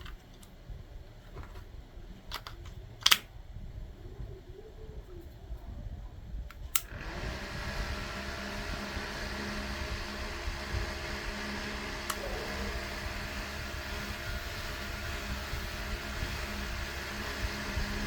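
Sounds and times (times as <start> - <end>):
sharp click: 2.3 - 3.3, 6.5 - 7.0
small fan motor whirring: 6.6 - 18.0.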